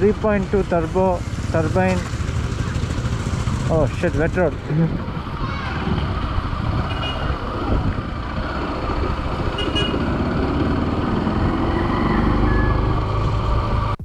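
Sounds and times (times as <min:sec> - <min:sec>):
motorcycle engine: 0:00.0 - 0:14.0
wind noise: 0:03.9 - 0:14.0
horn toots: 0:06.8 - 0:07.4, 0:09.4 - 0:10.1.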